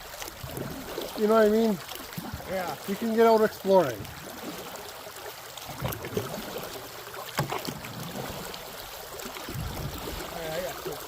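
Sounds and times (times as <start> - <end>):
paddle water swishing and dripping: 0.0 - 11.0
sharp knocks on canoe: 7.3 - 7.9.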